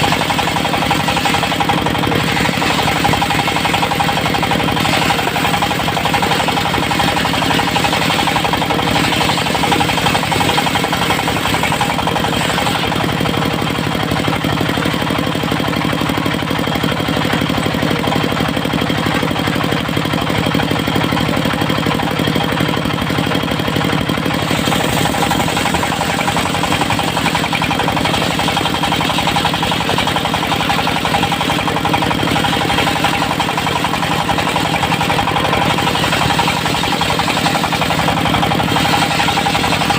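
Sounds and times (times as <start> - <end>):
sawmill engine running: 0.0 - 39.9.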